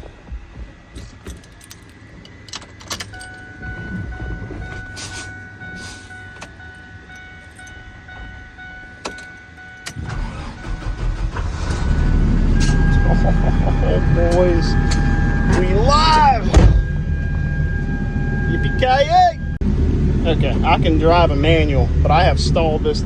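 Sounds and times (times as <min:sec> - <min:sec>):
dashboard warning tone: 0:00.1 - 0:19.6
truck engine cranking and starting: 0:00.9 - 0:23.0
keys and switches clicking: 0:01.0 - 0:05.3, 0:06.2 - 0:08.4, 0:09.0 - 0:10.0.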